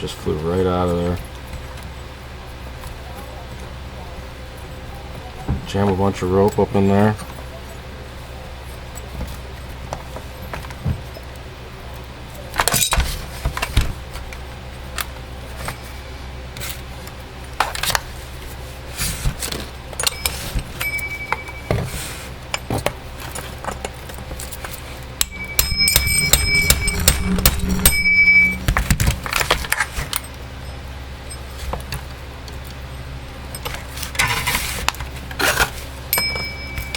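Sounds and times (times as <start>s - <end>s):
metal tools clinking: 12.6s - 13.3s, 19.9s - 32.1s, 35.4s - 36.9s
hammer striking steel: 25.2s - 29.5s, 36.2s - 36.9s.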